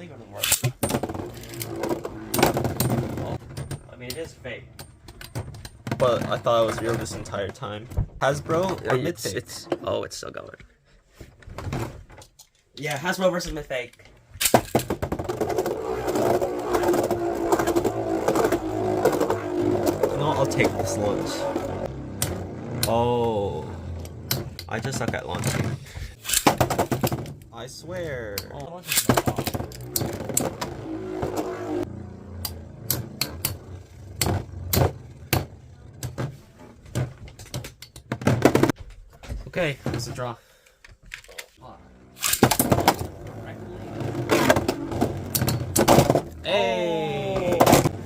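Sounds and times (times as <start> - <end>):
spinning tops whirring: 15.1 - 23.0
tops clicking against each other: 32.4 - 34.3.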